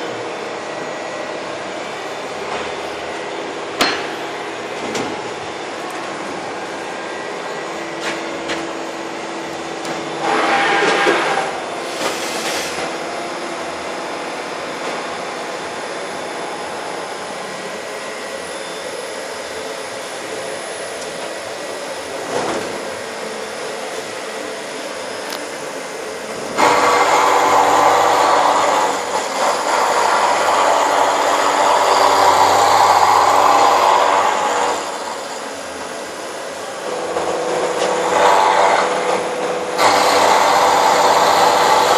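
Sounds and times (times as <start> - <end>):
milling machine humming: 0.0 - 41.9
rough metal cutting noise: 3.7 - 6.5, 10.0 - 13.0, 26.3 - 35.6, 36.7 - 41.9.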